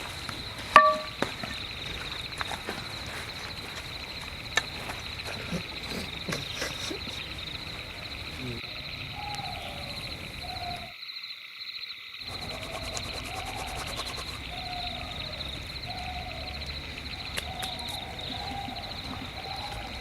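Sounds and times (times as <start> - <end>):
insect chorus chirping: 0.0 - 20.0
bird or animal calls: 5.2 - 10.9, 12.3 - 20.0.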